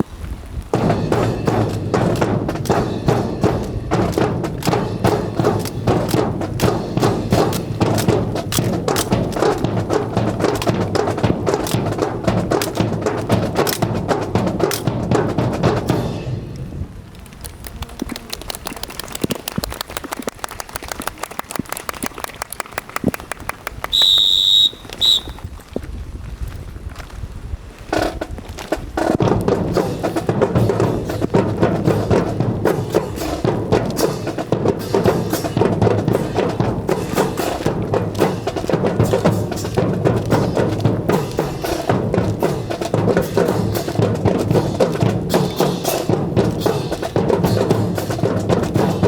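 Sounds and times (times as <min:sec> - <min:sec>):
rifles clacking in rhythm: 0:00.8 - 0:16.8, 0:29.0 - 0:49.0
loud whistle blast: 0:23.9 - 0:25.4.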